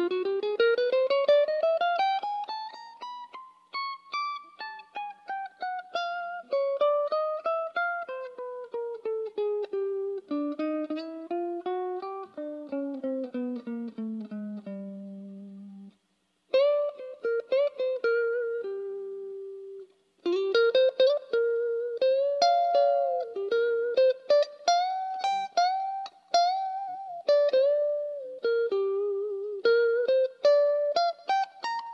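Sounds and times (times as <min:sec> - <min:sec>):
clean electric guitar playing: 0:00.0 - 0:31.9.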